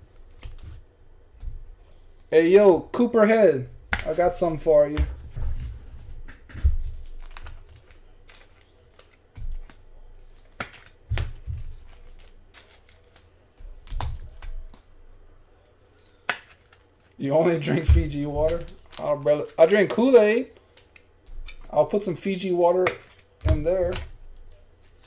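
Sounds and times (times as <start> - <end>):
cards clicking and rustling: 6.3 - 14.9, 15.6 - 25.0.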